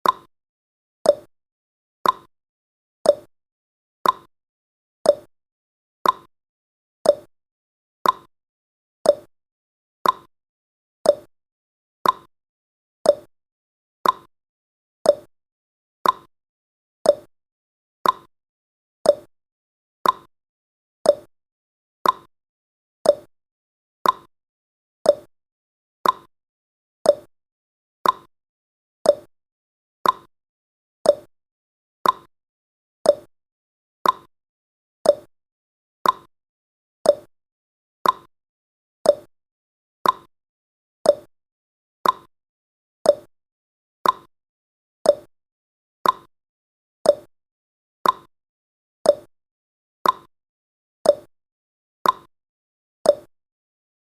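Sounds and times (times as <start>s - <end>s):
clock ticking: 32.0s - 32.3s, 34.0s - 34.3s, 38.0s - 38.3s, 40.0s - 40.3s, 42.0s - 42.3s, 46.0s - 46.3s, 48.0s - 48.3s.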